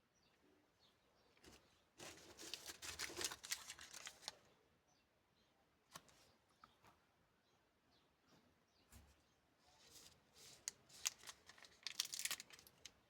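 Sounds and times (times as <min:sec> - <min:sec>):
candy packaging crinkling: 0:02.0 - 0:04.4, 0:10.4 - 0:13.0.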